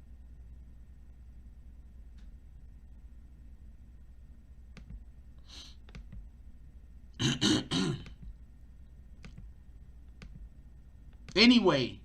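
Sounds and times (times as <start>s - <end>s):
faint clicks: 2.1s - 2.4s, 9.2s - 10.5s
man clearing his throat: 7.2s - 8.2s.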